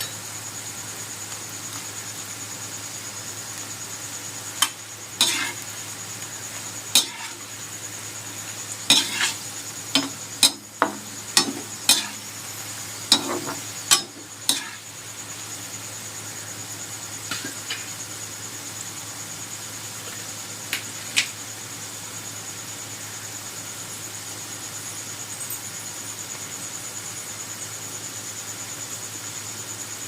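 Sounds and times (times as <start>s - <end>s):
steady low hum: 4.6s - 15.6s
metal utensil clinking on cookware: 8.9s - 9.4s, 10.0s - 12.2s, 13.1s - 14.8s.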